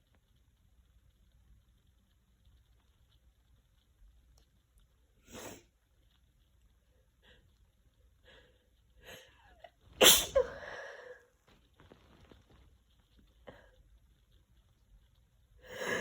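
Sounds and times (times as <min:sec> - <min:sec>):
woman sneezing: 0:10.0 - 0:10.7
woman breathing: 0:10.4 - 0:11.3, 0:15.6 - 0:16.0.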